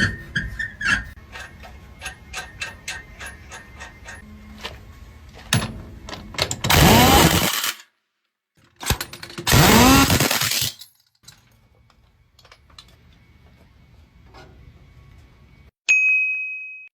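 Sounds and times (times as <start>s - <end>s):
power tool whirring: 6.7s - 7.8s, 9.4s - 10.7s.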